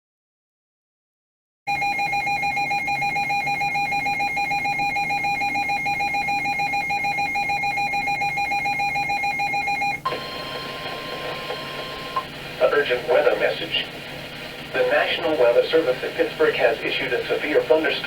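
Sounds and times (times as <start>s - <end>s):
rapidly pulsing alarm beep: 1.7s - 13.6s
steady alarm tone: 1.7s - 17.6s.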